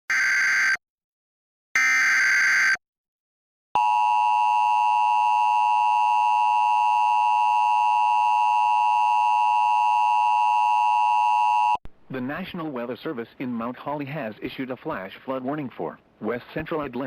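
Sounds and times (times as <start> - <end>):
two-tone alert signal: 0.1 - 0.8.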